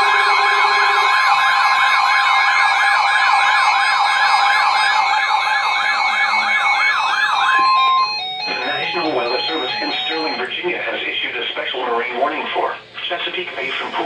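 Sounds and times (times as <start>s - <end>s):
electronic siren sweep: 0.0s - 10.4s
steady electronic tones: 0.0s - 10.6s.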